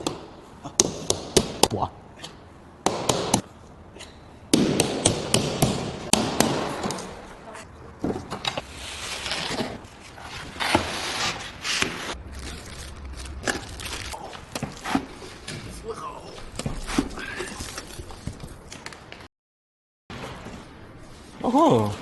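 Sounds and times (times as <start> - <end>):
packaging scraping and rustling: 8.6 - 15.5.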